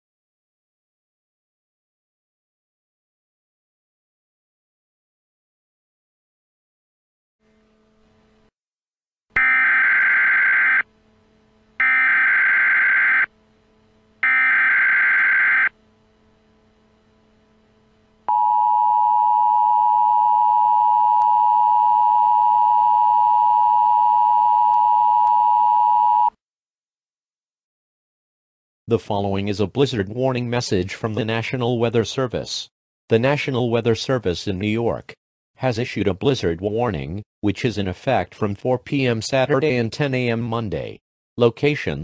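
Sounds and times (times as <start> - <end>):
steady alarm beep: 9.4 - 10.8, 11.8 - 13.3, 14.2 - 15.7, 18.3 - 26.3
harsh data bursts: 11.8 - 13.3, 14.2 - 15.7.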